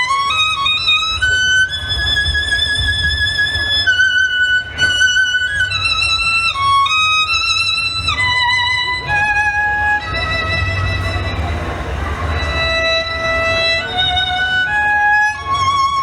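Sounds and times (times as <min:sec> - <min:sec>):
solo violin melody: 0:00.0 - 0:16.0
steady low rumble: 0:09.0 - 0:14.7.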